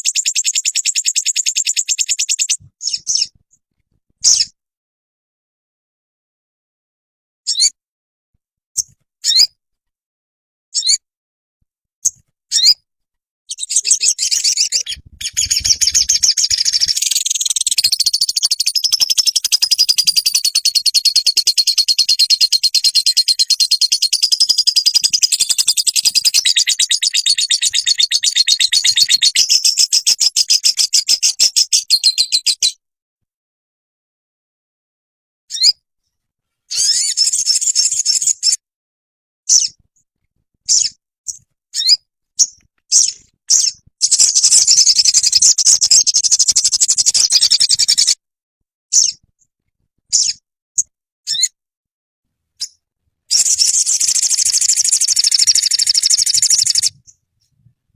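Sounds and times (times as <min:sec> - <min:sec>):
bird chirps and trill: 0:00.0 - 0:03.4, 0:04.2 - 0:04.6, 0:07.5 - 0:07.8, 0:08.8 - 0:09.6, 0:10.7 - 0:11.0, 0:12.0 - 0:12.8, 0:13.5 - 0:32.8, 0:35.5 - 0:35.8, 0:36.7 - 0:38.6, 0:39.5 - 0:39.8, 0:40.7 - 0:48.2, 0:48.9 - 0:49.2, 0:50.1 - 0:51.6, 0:52.6 - 0:57.2.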